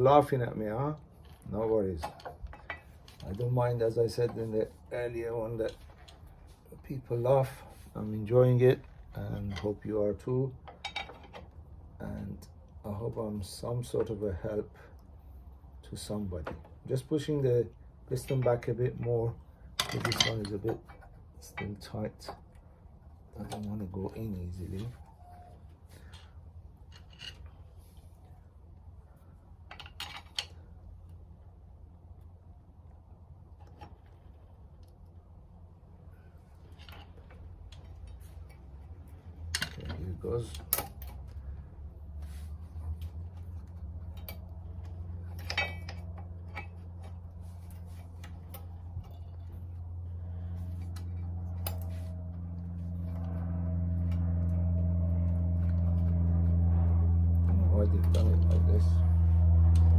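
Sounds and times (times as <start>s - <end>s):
steady low hum: 0.0s - 59.9s
metallic clicks and scrapes: 25.8s - 28.5s, 29.6s - 31.2s, 36.4s - 57.4s
metal clicks of tools and brake pads: 39.5s - 41.4s, 43.0s - 49.6s.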